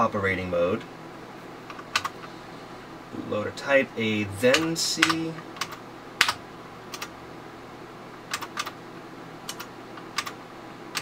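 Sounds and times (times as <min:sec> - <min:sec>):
keyboard keys clicking: 0:01.7 - 0:02.1, 0:04.5 - 0:07.1.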